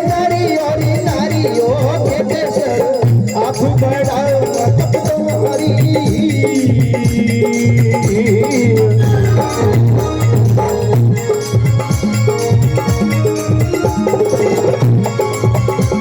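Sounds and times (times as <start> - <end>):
rhythmic percussion: 0.0 - 16.0
wavering folk melody: 8.6 - 16.0.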